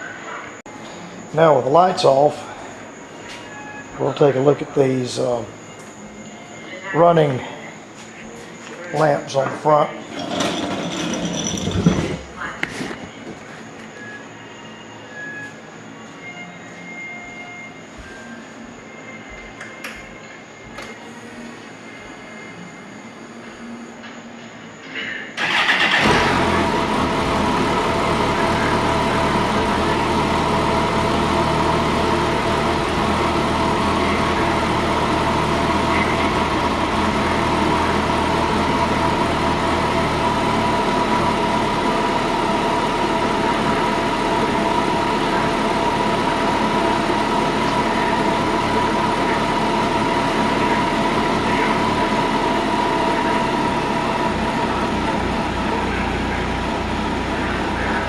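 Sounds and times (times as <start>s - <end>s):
motorcycle engine idling: 25.4s - 58.0s.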